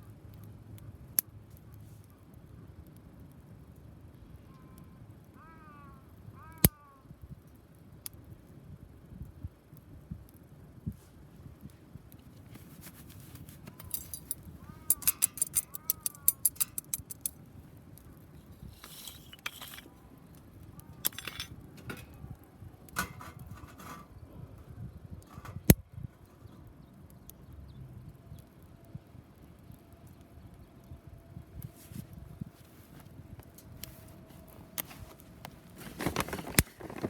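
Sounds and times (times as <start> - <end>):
firewood crackling: 9.6 - 24.6, 28.3 - 37.0
sharp pops of burning wood: 11.4 - 19.6.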